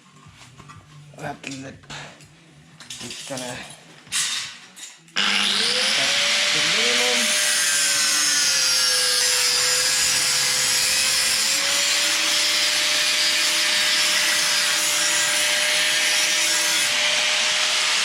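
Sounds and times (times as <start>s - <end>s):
power saw cutting: 5.2s - 18.0s.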